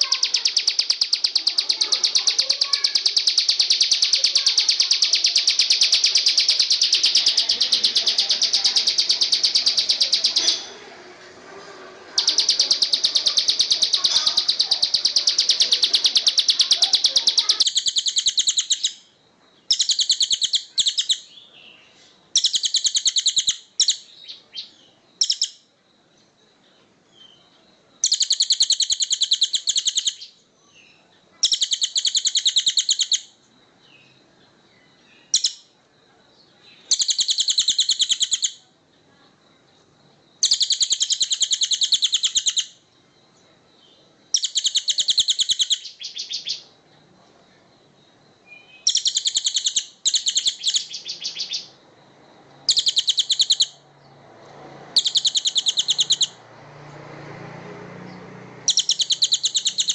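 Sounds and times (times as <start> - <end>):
songbird rattling trill: 0.0 - 10.8, 12.0 - 21.4, 22.3 - 25.6, 28.0 - 30.4, 31.4 - 33.4, 35.2 - 35.7, 36.8 - 38.6, 40.4 - 42.8, 44.3 - 46.7, 48.6 - 51.8, 52.6 - 53.8, 54.9 - 56.5, 57.2 - 59.9.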